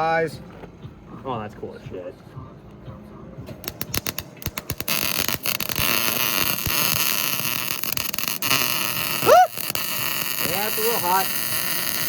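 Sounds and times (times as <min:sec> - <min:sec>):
welding arc crackling: 0:03.5 - 0:12.0.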